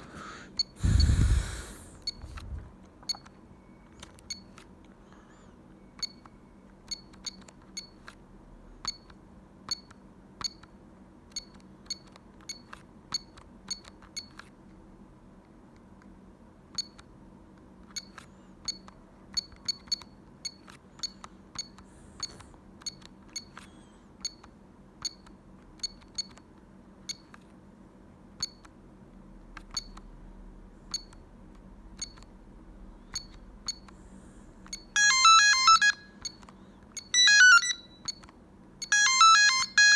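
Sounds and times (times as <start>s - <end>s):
faint steady hum: 0.0s - 39.9s
phone key clicks with beeps: 2.0s - 4.7s, 5.8s - 8.2s, 8.8s - 10.7s, 11.3s - 14.5s, 16.7s - 17.1s, 17.9s - 26.5s, 27.1s - 27.5s, 28.4s - 28.7s, 29.6s - 30.1s, 30.9s - 31.2s, 32.0s - 32.4s, 33.1s - 34.0s, 34.6s - 39.9s.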